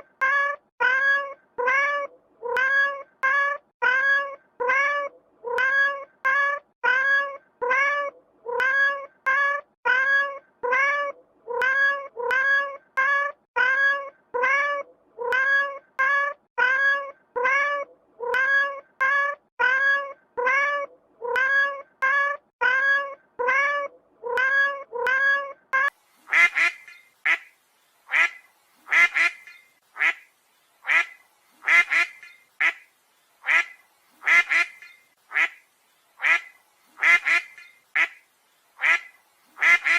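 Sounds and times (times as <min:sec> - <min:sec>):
duck quacking: 0:26.3 - 0:27.5, 0:28.1 - 0:30.2, 0:30.9 - 0:32.8, 0:33.4 - 0:35.6, 0:36.2 - 0:38.2, 0:38.8 - 0:39.9.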